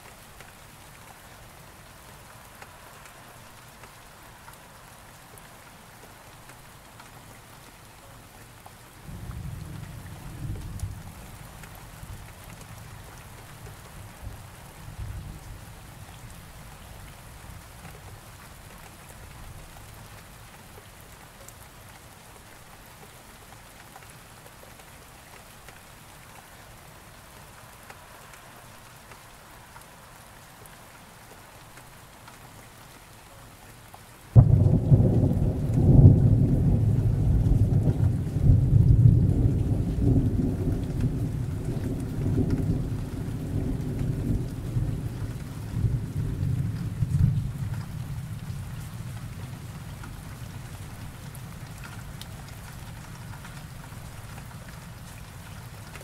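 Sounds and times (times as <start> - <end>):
rain falling: 0.0 - 56.0
low rumble of thunder: 9.1 - 13.1, 14.1 - 16.2, 34.4 - 53.1
loud thunderclap rolling: 34.4 - 47.8.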